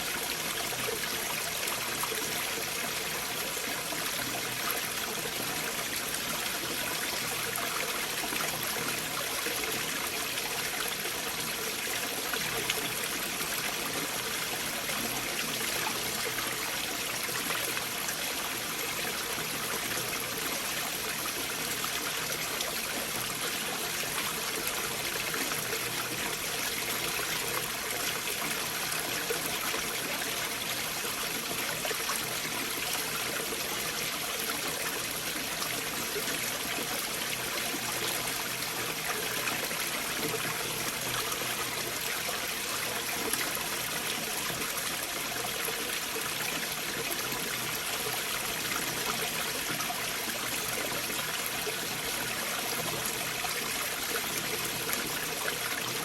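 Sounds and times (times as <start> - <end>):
stream water rushing and trickling: 0.0 - 56.0.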